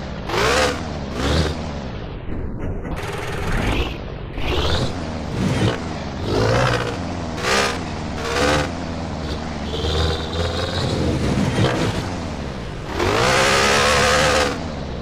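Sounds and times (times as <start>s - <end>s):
engine revving with tonal exhaust: 0.0s - 1.8s, 3.0s - 15.0s.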